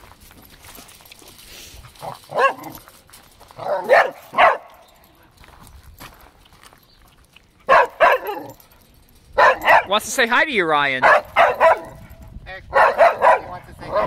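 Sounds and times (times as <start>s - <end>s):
dog barking: 2.3s - 2.8s, 3.6s - 4.8s, 7.7s - 8.6s, 9.4s - 9.9s, 11.0s - 12.1s, 12.7s - 14.0s.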